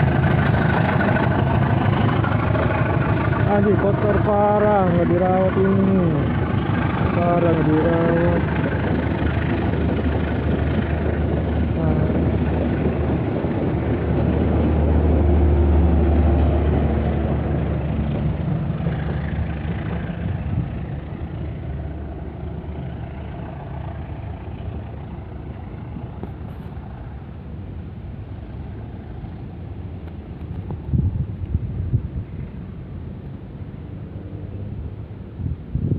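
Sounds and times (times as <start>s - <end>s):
diesel locomotive droning: 0.0s - 35.9s.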